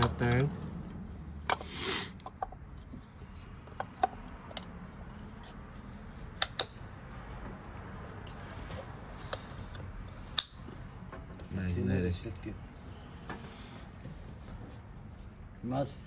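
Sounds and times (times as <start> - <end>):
tools clicking and tapping: 6.3 - 6.8, 9.3 - 11.5.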